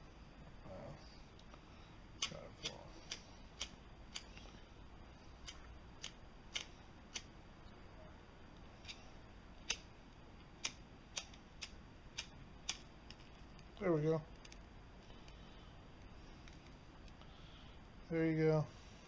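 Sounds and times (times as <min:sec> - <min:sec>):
lighter flint wheel clicking: 0:02.2 - 0:04.5, 0:05.4 - 0:07.3, 0:09.6 - 0:09.9, 0:10.6 - 0:13.7.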